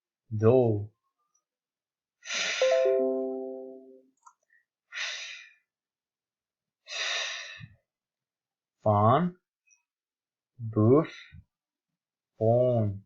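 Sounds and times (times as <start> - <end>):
short ringing musical tone: 2.6 - 4.0.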